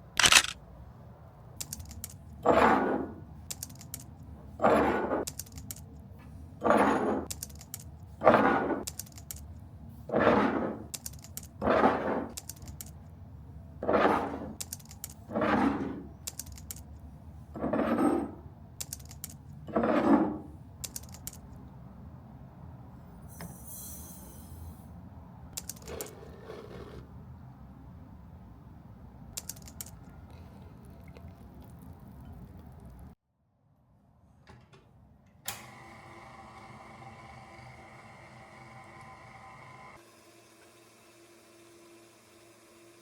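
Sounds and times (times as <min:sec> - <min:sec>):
scraping strokes: 0:25.8 - 0:27.1.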